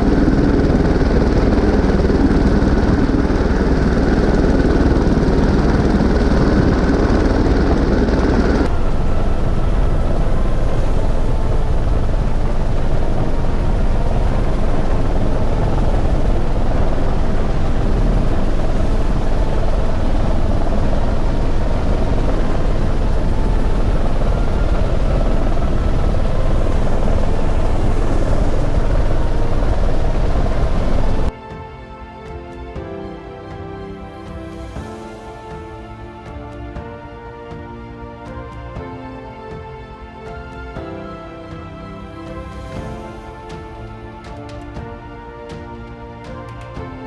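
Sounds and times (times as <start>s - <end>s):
helicopter rotor and engine: 0.0s - 31.3s.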